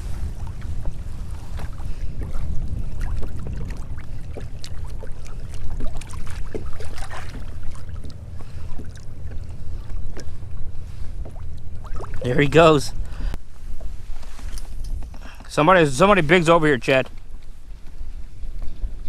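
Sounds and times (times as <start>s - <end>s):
wind rumble on microphone: 0.0s - 19.0s
water splashing and dripping: 0.4s - 10.4s, 11.2s - 12.3s.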